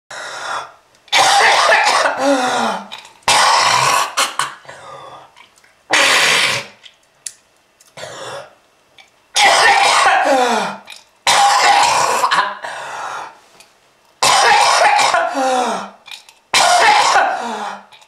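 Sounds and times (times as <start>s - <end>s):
person coughing hard: 1.1s - 4.9s, 5.9s - 6.8s, 9.4s - 12.9s, 14.2s - 17.9s.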